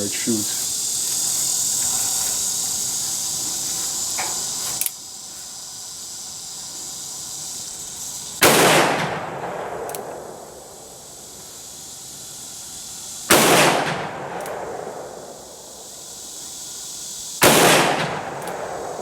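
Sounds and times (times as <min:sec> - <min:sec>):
revolver shot with ringing decay: 0:08.4 - 0:11.0, 0:13.3 - 0:15.6, 0:17.4 - 0:19.0.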